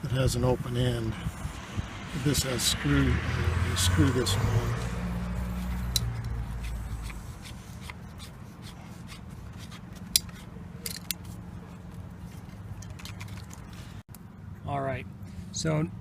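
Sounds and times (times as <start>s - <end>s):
small parts rubbing and clicking: 5.5s - 11.4s, 12.2s - 13.8s.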